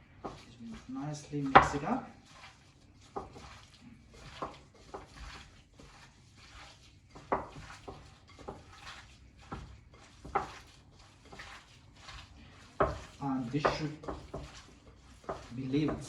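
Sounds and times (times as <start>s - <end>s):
utensil knocking against bowl: 1.4s - 1.9s, 7.1s - 8.8s, 9.4s - 10.7s, 12.7s - 16.0s.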